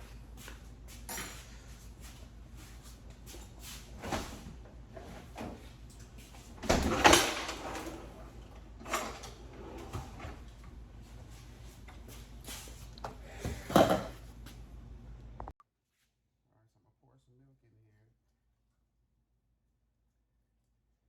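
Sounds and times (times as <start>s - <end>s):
drawer clatter: 6.6s - 10.4s, 13.5s - 14.2s.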